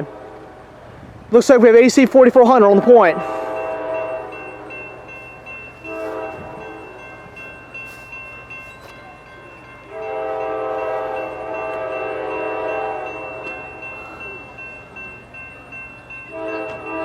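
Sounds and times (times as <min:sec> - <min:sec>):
locomotive air horn blasts: 0:02.6 - 0:05.2, 0:05.8 - 0:07.1, 0:09.9 - 0:13.8, 0:16.3 - 0:17.0.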